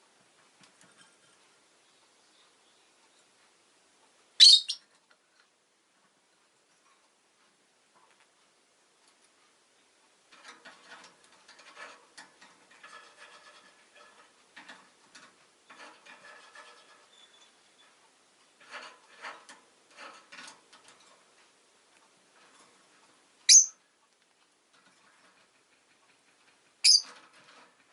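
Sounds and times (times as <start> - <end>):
bird clicking and scratching: 0.3 - 1.8, 4.8 - 27.9
soft bird chatter: 0.6 - 5.4, 9.0 - 27.9
sharp high-pitched bird chirp: 4.4 - 4.9, 23.5 - 23.8, 26.8 - 27.1.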